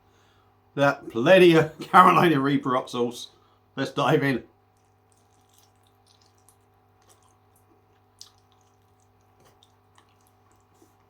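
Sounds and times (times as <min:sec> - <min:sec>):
wet chewing: 0:04.6 - 0:11.0.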